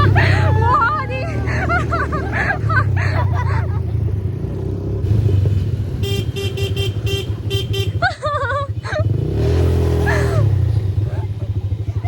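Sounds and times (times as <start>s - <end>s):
vehicle engine running: 0.0s - 12.0s
car horn toots: 6.0s - 8.0s.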